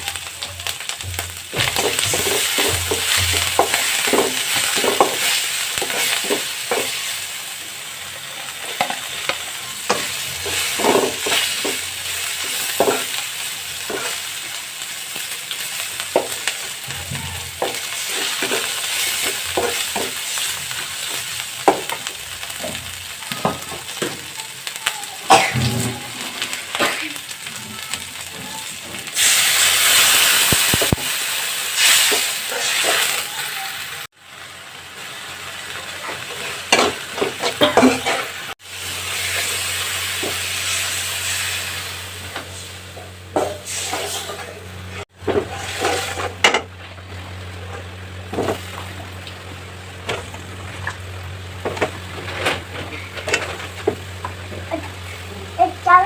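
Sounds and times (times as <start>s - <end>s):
food sizzling in hot oil: 0.0s - 56.0s
spatula scraping pan: 36.0s - 38.4s, 42.4s - 47.0s.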